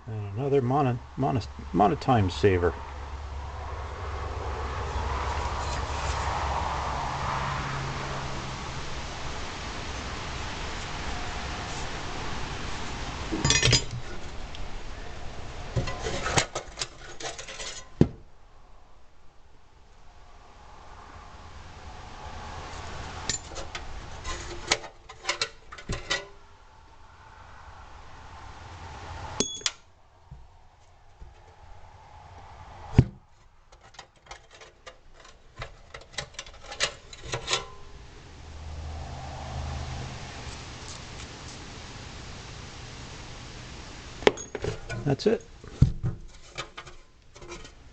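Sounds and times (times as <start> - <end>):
steady hiss: 8.0 - 15.4
metal parts clinking: 13.4 - 14.0
metal parts clinking and rattling: 13.4 - 14.1, 15.9 - 18.0.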